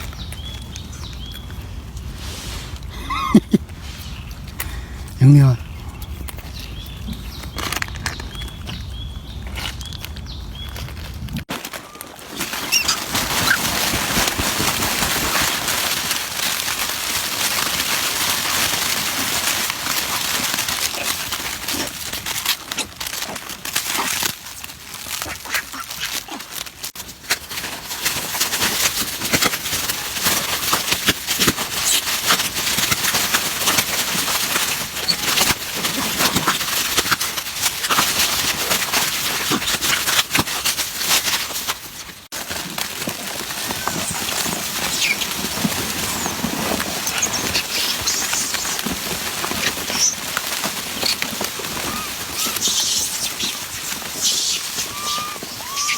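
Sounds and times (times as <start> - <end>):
monkeys calling: 12.0 - 13.8, 51.0 - 55.9.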